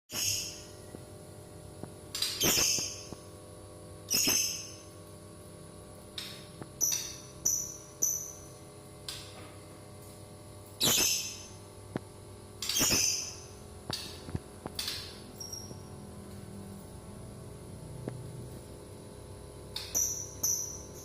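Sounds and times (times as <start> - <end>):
caged birds calling shrilly: 0.1 - 1.0, 2.1 - 3.2, 4.1 - 5.0, 6.2 - 9.2, 10.6 - 11.7, 12.6 - 16.0, 19.7 - 21.0.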